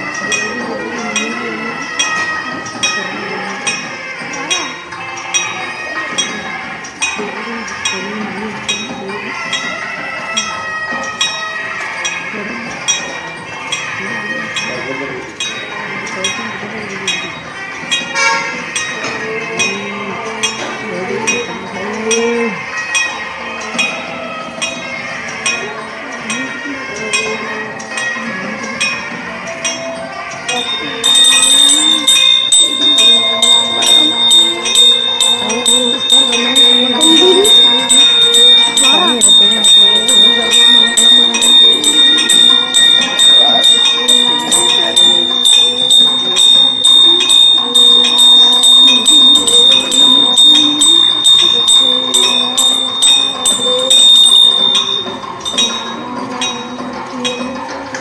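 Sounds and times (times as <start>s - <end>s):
murmur of voices: 0.0s - 58.0s
temple bell struck rapidly: 29.6s - 58.0s.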